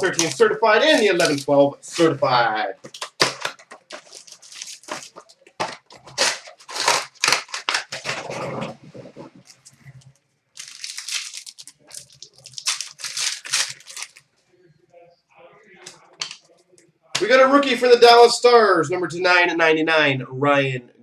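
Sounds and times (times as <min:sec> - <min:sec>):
wrappers and cardboard tearing: 0:00.0 - 0:10.0, 0:10.6 - 0:14.2
packaging rustle: 0:00.0 - 0:14.2.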